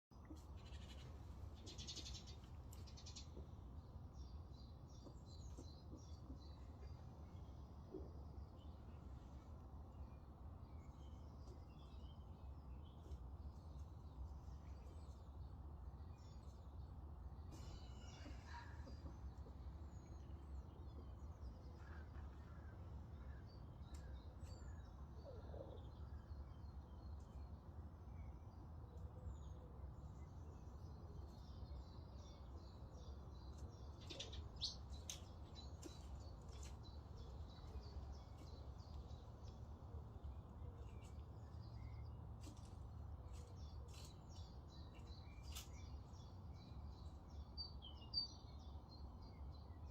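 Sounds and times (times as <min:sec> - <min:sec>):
faint high bird chirps: 0:17.5 - 0:19.5.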